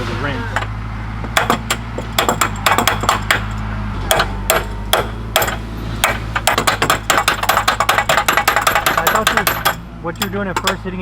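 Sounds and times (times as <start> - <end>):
low hum: 0.0 - 8.8.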